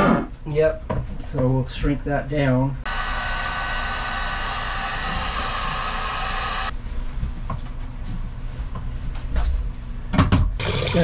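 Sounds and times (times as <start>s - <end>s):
heat gun blowing with fan whine: 2.9s - 6.8s.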